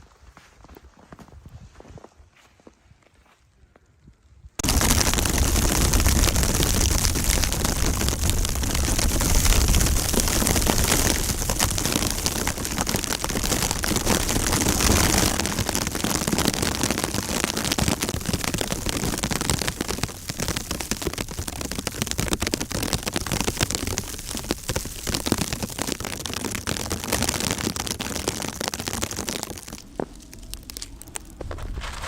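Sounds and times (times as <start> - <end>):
snowstorm wind gusts: 4.6 - 25.4, 29.7 - 32.0
snow pelting a surface: 4.6 - 32.0.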